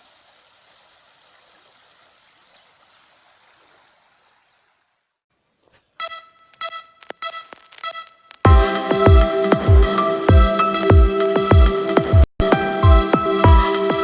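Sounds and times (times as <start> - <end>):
river water flowing: 0.0 - 5.1, 8.5 - 14.0
electronic music with a beat: 6.6 - 14.0.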